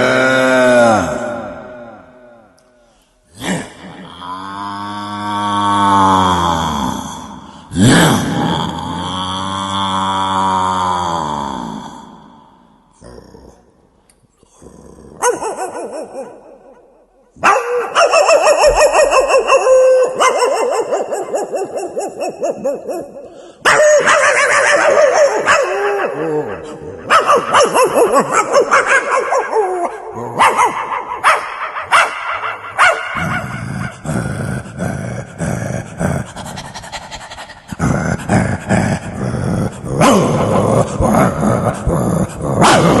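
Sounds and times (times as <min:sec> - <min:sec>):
dog barking and yipping: 0:17.4 - 0:25.9, 0:27.1 - 0:33.2.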